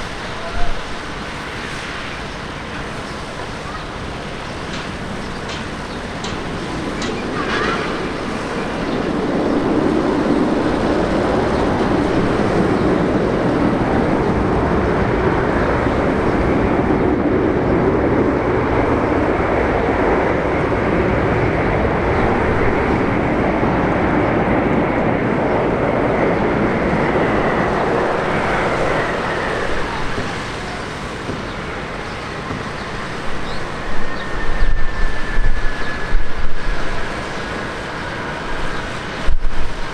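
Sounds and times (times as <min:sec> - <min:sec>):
jet airliner engines passing: 0:00.0 - 0:39.9.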